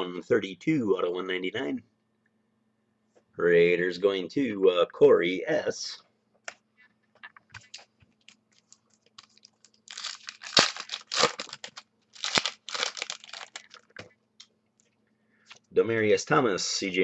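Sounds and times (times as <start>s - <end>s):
foil wrapper crinkling and tearing: 7.8s - 14.0s.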